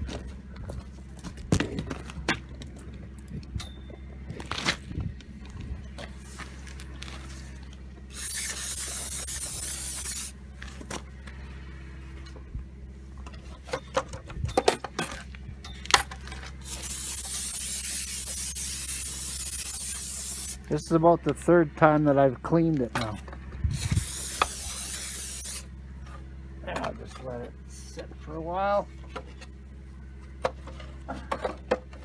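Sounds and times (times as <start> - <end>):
aerosol can spraying: 8.1 - 10.3, 16.7 - 20.7, 23.8 - 25.7.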